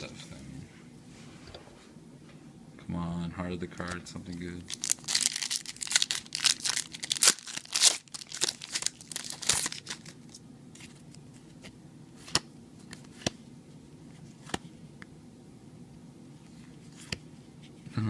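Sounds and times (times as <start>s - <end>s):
foil wrapper tearing and crinkling: 4.7s - 10.4s.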